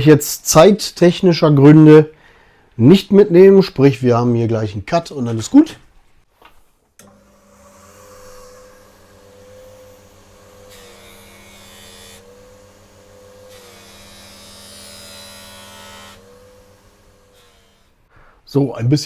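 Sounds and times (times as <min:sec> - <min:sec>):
polishing machine motor hum: 0:07.0 - 0:18.1
hiss of metal on buffing wheel: 0:08.0 - 0:18.1.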